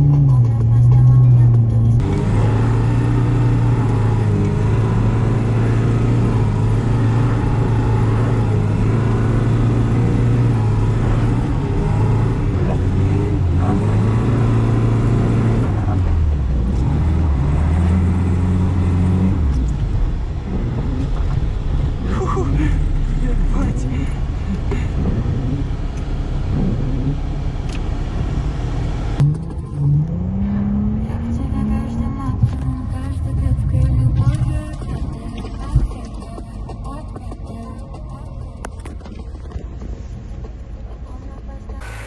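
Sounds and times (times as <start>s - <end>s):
car engine running under load: 0.0s - 41.0s, 41.7s - 42.0s.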